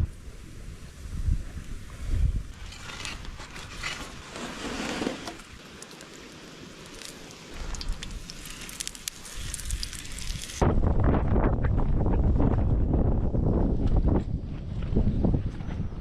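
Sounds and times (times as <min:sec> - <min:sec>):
wind buffeting microphone: 0:00.0 - 0:03.8, 0:09.2 - 0:16.0
campfire crackling and popping: 0:05.4 - 0:10.6.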